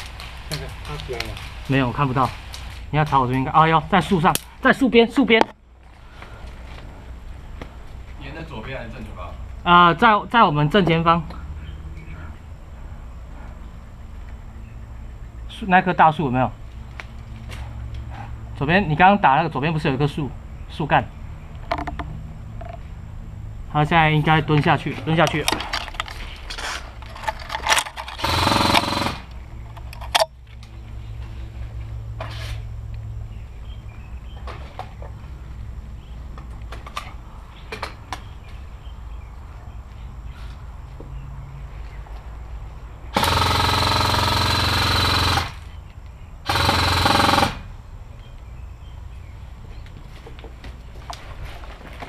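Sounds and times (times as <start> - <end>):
airsoft gun full-auto burst: 28.2 - 29.3, 43.1 - 45.7, 46.4 - 47.7.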